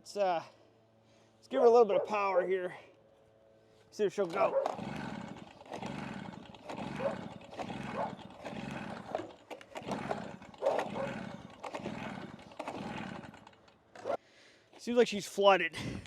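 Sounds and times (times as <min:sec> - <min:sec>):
recoil starter cranking engine: 0:04.2 - 0:14.1.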